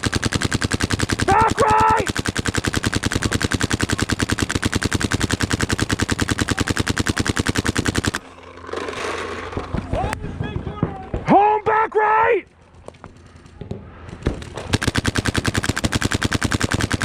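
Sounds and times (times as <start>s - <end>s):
paintball marker rapid firing: 0.0s - 8.2s, 13.0s - 17.0s.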